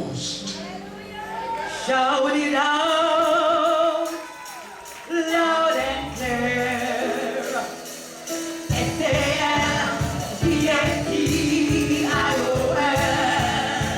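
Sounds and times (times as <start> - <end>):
gospel singers: 0.0 - 13.9
band playing upbeat song: 3.2 - 13.9.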